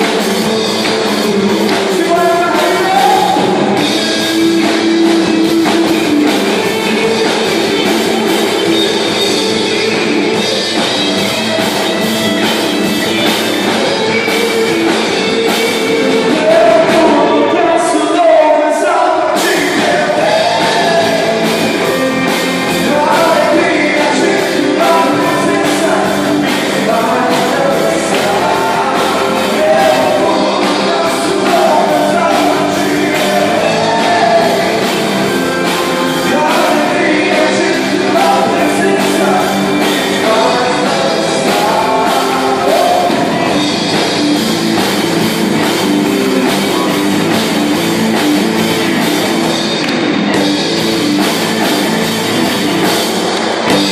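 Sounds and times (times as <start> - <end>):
person singing: 0.0 - 10.8, 13.0 - 44.1
rock band playing: 0.0 - 53.9.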